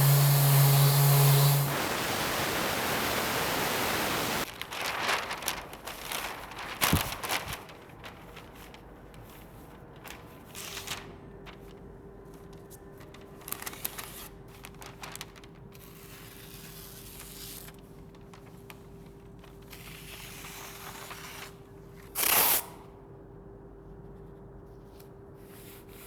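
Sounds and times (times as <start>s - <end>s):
compressed air blast: 0.0s - 4.4s
spray gun hissing: 0.0s - 4.4s
steady hum: 0.0s - 5.2s.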